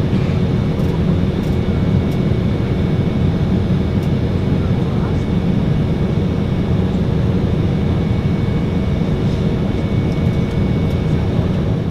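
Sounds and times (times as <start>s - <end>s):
aircraft cabin engine drone: 0.0s - 11.9s.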